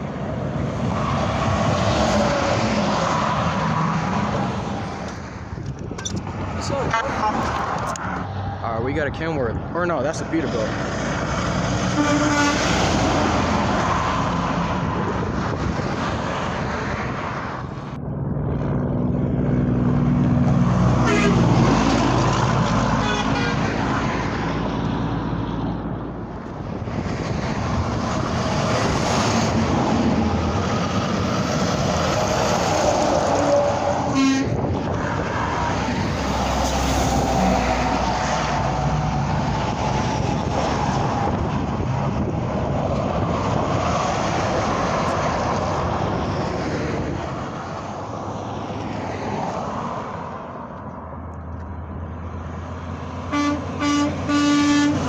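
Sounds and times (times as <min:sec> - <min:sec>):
trucks passing at highway speed: 0:00.0 - 0:55.0
truck horn chord: 0:11.9 - 0:12.7, 0:21.0 - 0:21.5, 0:34.1 - 0:34.5, 0:53.3 - 0:55.0.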